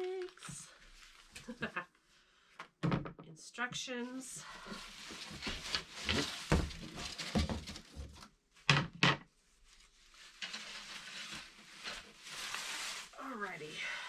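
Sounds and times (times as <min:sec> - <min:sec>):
packaging rustling: 0:04.6 - 0:08.2, 0:09.6 - 0:13.2
knocking of furniture parts: 0:06.1 - 0:09.2.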